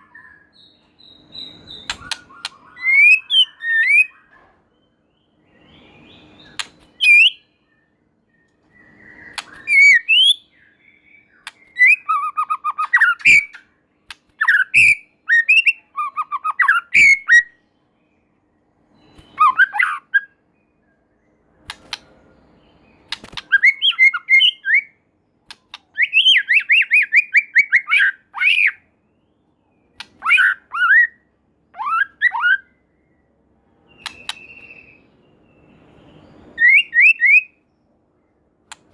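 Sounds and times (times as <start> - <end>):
songbird singing whistles and trills: 0.0 - 21.8, 22.6 - 38.4.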